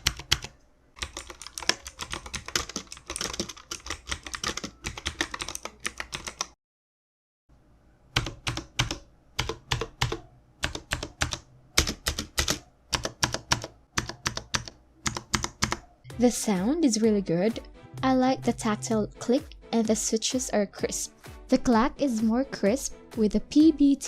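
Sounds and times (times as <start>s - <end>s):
clicky mechanical keyboard typing: 0.0s - 6.5s, 8.2s - 15.9s.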